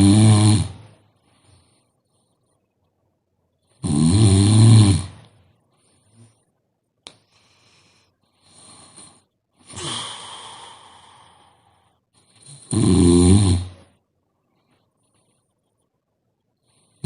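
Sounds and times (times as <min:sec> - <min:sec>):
person snoring: 0:00.0 - 0:01.0, 0:03.8 - 0:05.3, 0:08.4 - 0:11.8, 0:12.4 - 0:13.9
quiet breath: 0:00.8 - 0:03.8, 0:05.4 - 0:12.7, 0:14.0 - 0:17.0.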